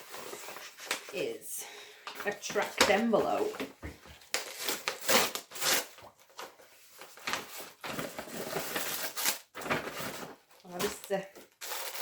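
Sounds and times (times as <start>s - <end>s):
packaging rustling: 4.2s - 12.0s
envelope tearing open: 4.3s - 6.0s, 7.2s - 12.0s.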